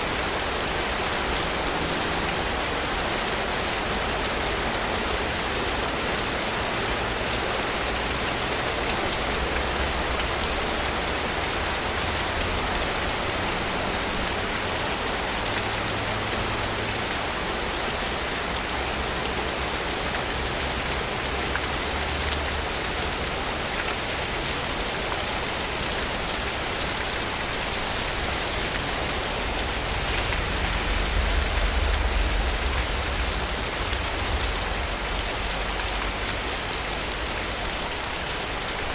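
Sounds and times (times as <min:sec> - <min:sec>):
rain on hard surfaces: 0:00.0 - 0:38.9
low rumble: 0:28.3 - 0:36.4.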